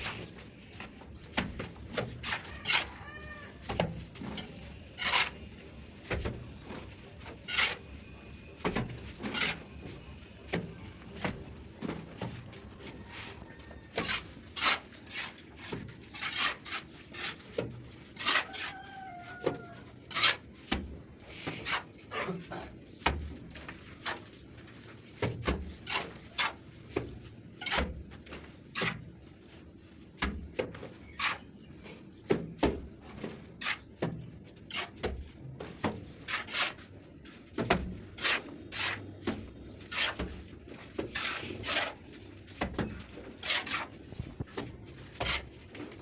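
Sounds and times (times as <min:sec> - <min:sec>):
trowel scraping plaster on wall: 0:05.0 - 0:05.5, 0:13.9 - 0:18.8, 0:20.0 - 0:22.7, 0:33.5 - 0:35.2, 0:35.8 - 0:46.0.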